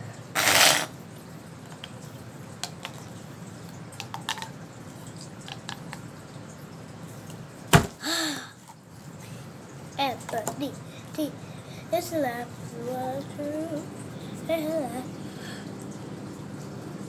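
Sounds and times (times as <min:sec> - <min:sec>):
squishy fidget toy rush: 0:00.4 - 0:01.0
small clicks and taps: 0:04.0 - 0:04.5
sharp knock: 0:07.7 - 0:08.0.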